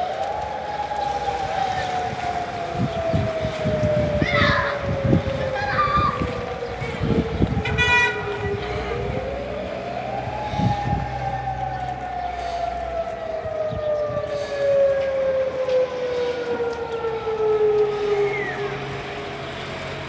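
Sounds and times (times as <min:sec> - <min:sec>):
warning siren wailing: 0:00.0 - 0:20.0.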